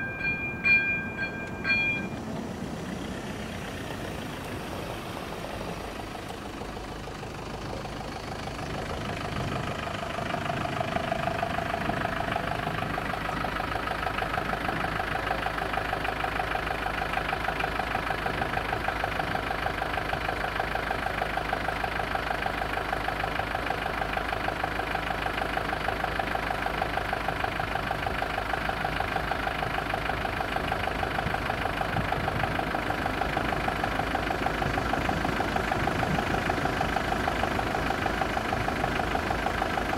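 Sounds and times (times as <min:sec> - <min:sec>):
electronic warning bell ringing: 0:00.0 - 0:02.4.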